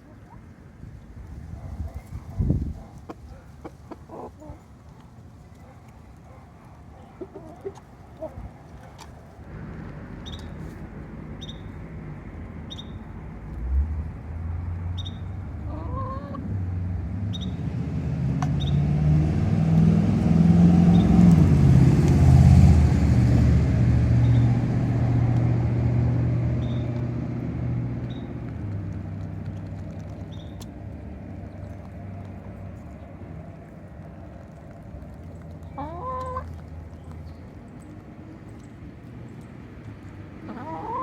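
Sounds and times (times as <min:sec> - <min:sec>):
vehicle engine passing by: 0:08.9 - 0:41.0
chicken call: 0:40.5 - 0:41.0.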